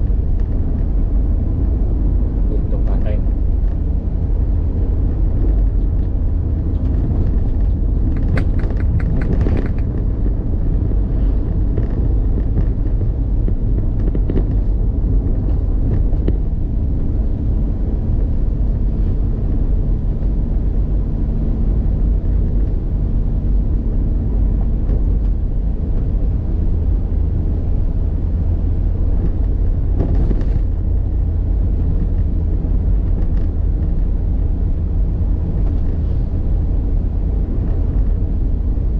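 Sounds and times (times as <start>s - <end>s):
vehicle rumble on the move: 0.0s - 38.9s
sharp clicks: 8.1s - 10.0s.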